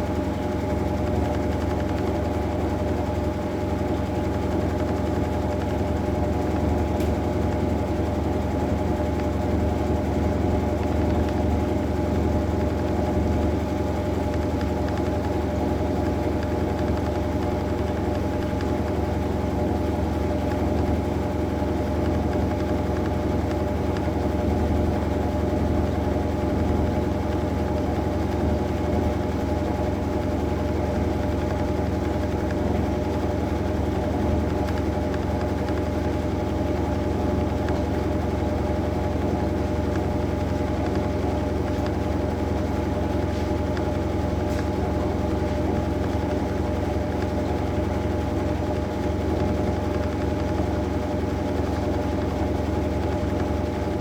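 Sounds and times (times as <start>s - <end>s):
washing machine motor hum: 0.0s - 54.0s.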